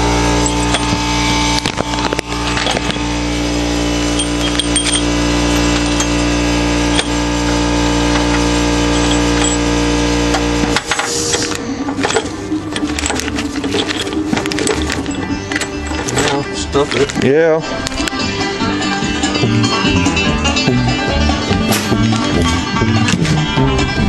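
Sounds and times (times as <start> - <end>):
steady mechanical hum: 0.0 - 24.0
hand tools clinking on metal: 0.4 - 1.0, 1.6 - 3.1, 4.1 - 6.3, 6.9 - 7.2, 8.8 - 9.8, 11.3 - 18.2.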